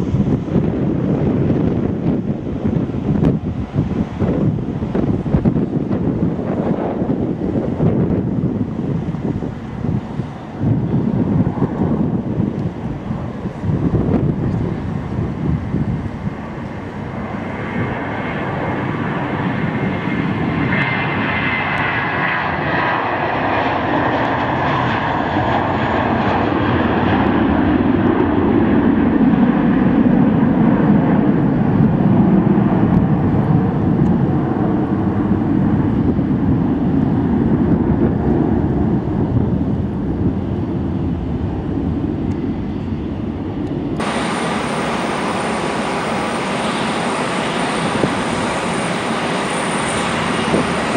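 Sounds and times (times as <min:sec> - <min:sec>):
airliner engines passing: 0:00.0 - 0:50.9
high steady engine whine: 0:37.8 - 0:50.9.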